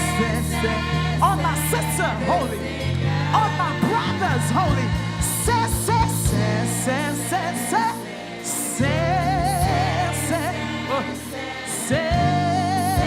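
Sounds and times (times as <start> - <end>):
sustained bass chords: 0.0 - 13.0
voices singing with vibrato: 0.0 - 13.0.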